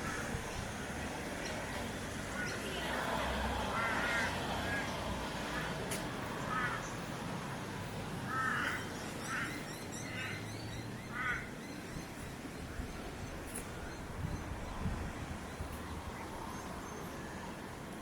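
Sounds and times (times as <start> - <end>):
low outdoor background noise: 0.0 - 18.0
bird calling: 8.3 - 14.6.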